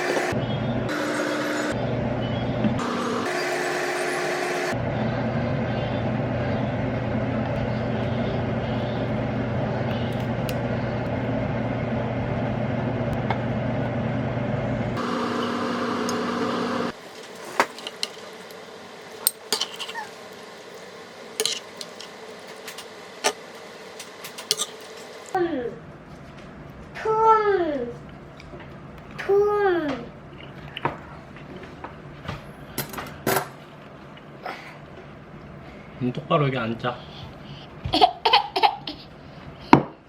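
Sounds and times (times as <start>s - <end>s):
kitchen machine whirring: 0.0s - 25.4s
dishes and utensils clinking: 17.0s - 25.4s.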